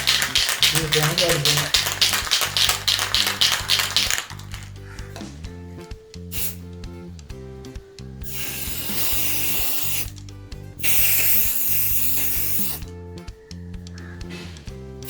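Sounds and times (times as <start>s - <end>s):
spray can hissing: 0.0s - 4.7s, 6.3s - 6.7s, 8.2s - 10.2s, 10.8s - 12.8s
background music: 0.0s - 15.0s.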